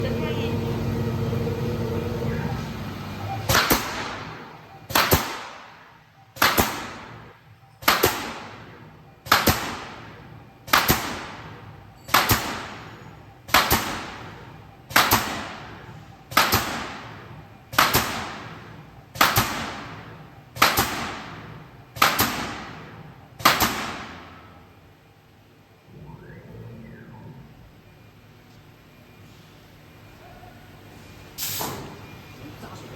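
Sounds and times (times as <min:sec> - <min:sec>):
machine hiss: 0:31.4 - 0:32.0.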